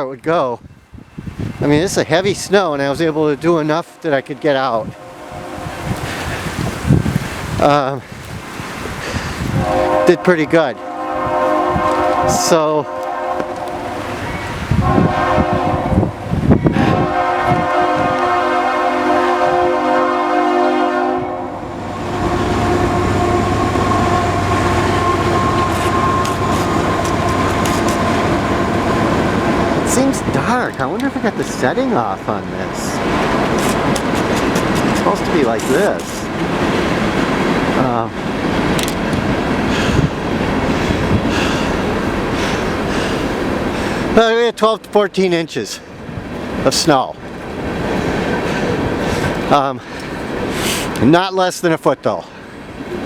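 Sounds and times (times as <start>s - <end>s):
train rumbling past: 1.0s - 7.7s, 8.4s - 44.3s, 45.8s - 51.2s
train horn chord: 4.0s - 6.5s, 9.6s - 30.4s.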